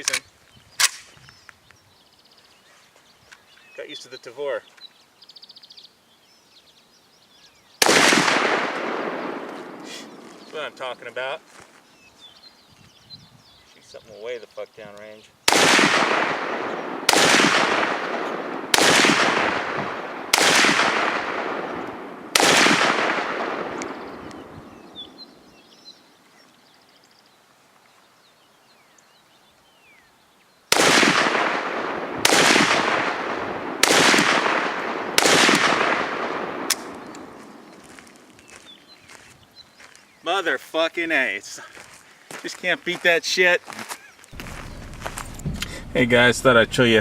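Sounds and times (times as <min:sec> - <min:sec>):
rifle shots echoing: 0:07.8 - 0:11.0, 0:15.5 - 0:25.3, 0:30.7 - 0:38.0.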